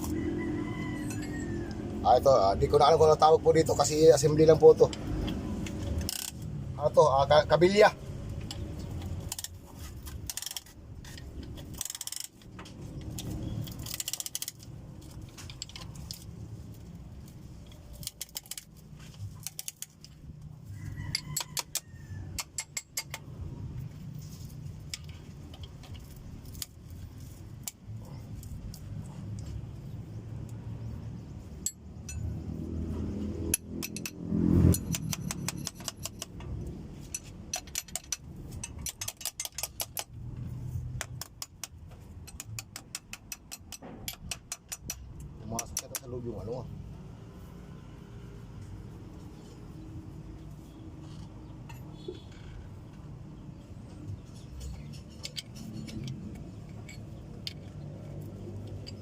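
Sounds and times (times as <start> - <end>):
metal parts and tools clinking: 1.0 - 1.5, 3.8 - 6.9, 8.4 - 20.3, 30.4 - 46.5, 50.9 - 53.2, 53.9 - 59.0.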